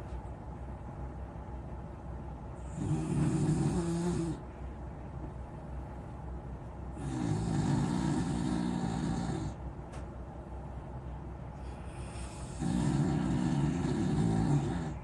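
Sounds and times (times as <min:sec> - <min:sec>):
dog snoring: 0:02.6 - 0:04.4, 0:06.9 - 0:09.6, 0:11.6 - 0:15.0.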